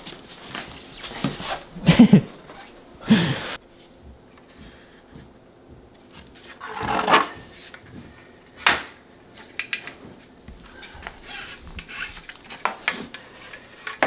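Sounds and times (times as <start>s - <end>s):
flooring planks scraping: 0.0s - 3.6s, 6.1s - 8.2s.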